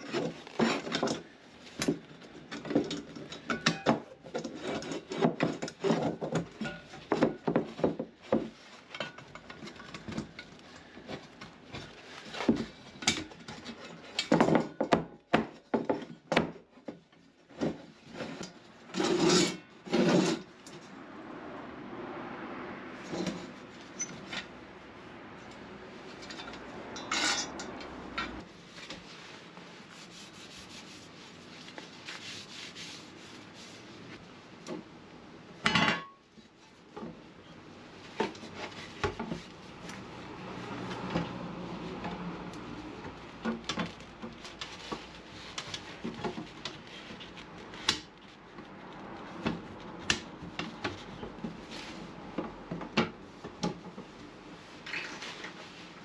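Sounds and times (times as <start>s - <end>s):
rubbing: 28.7s - 34.2s.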